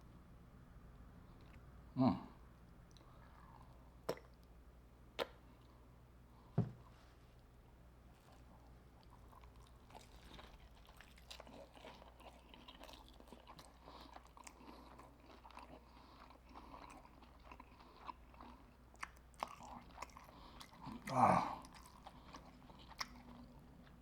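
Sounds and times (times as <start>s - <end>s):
crunchy chewing: 8.1s - 24.0s.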